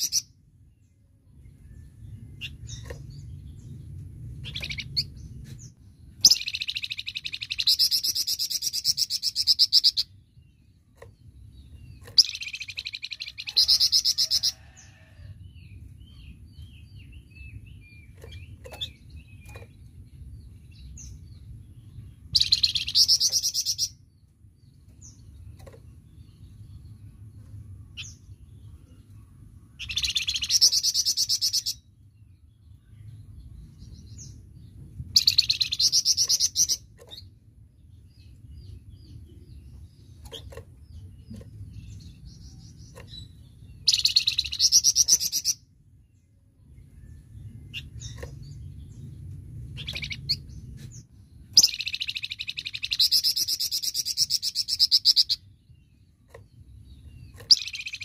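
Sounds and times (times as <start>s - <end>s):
soft bird chirps: 0.0s - 58.0s
low hum: 0.3s - 7.2s, 45.6s - 52.6s
songbird rattling song bursts: 6.1s - 14.6s, 34.4s - 37.7s, 40.0s - 45.7s, 47.6s - 58.0s.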